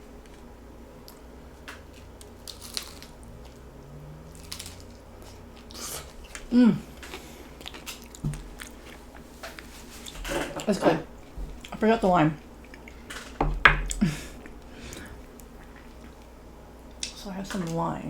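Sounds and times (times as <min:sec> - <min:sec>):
crunchy shell being chewed: 0:01.0 - 0:10.3.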